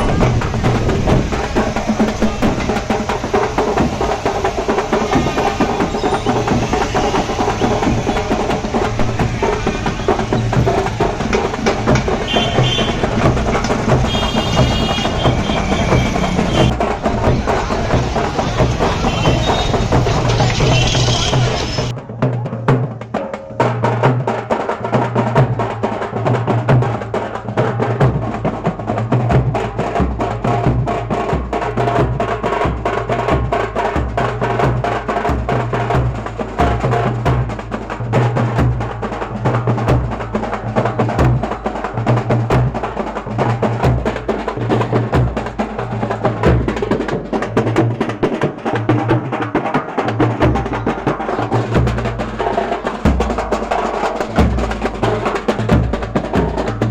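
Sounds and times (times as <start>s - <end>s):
dense drum percussion: 0.0s - 56.9s
low bass beat: 6.4s - 21.8s.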